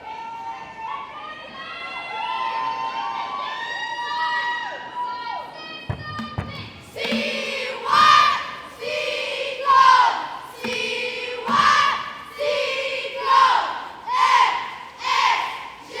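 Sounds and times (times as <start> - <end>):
squad chanting in unison: 6.2 - 16.0.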